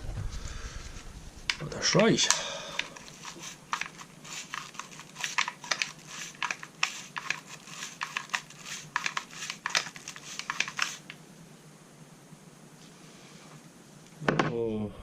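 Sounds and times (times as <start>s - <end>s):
brush scrubbing metal: 2.9s - 11.1s.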